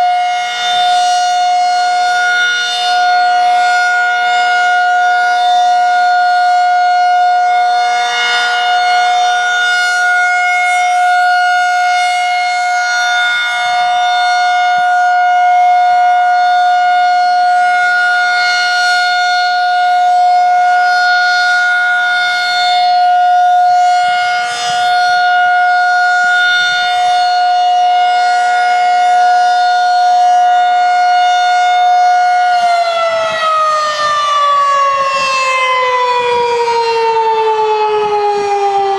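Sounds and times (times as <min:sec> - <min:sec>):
dual-tone warning siren: 0:00.0 - 0:38.9.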